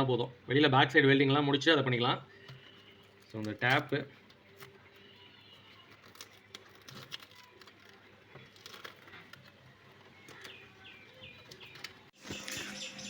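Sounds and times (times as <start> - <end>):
tape handling clicks and crackles: 2.4 - 10.7, 11.3 - 12.6
bird chirping: 9.8 - 13.0.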